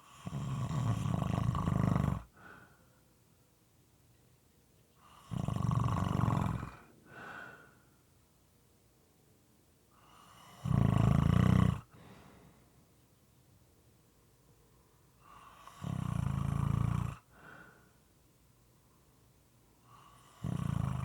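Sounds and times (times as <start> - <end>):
quiet breath: 0.0 - 0.4, 2.2 - 3.6, 4.8 - 5.4, 6.4 - 8.3, 9.8 - 10.6, 11.8 - 13.4, 14.4 - 16.0, 17.2 - 21.0
person snoring: 0.0 - 2.7, 5.0 - 7.6, 10.0 - 12.0, 15.4 - 17.5, 20.0 - 21.0.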